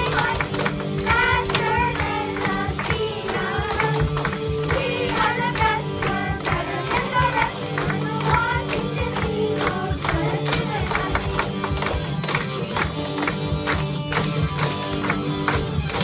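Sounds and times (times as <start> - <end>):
children singing together: 0.0 - 11.7
instrumental backing track with beat: 0.0 - 16.0.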